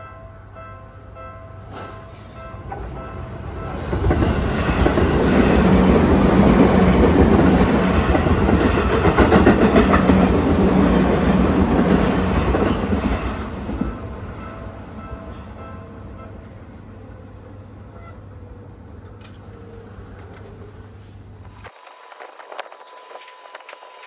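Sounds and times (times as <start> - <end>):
train wheels clattering on rails: 1.6 - 15.8.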